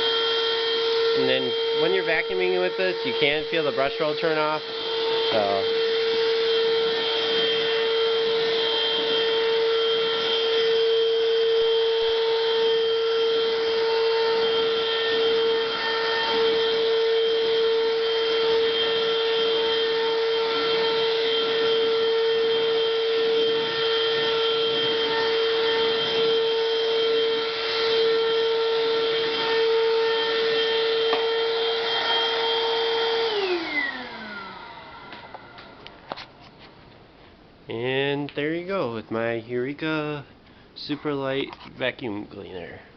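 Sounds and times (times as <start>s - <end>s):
vacuum motor winding down: 0.0s - 36.0s
stick vacuum motor whine: 0.0s - 36.4s.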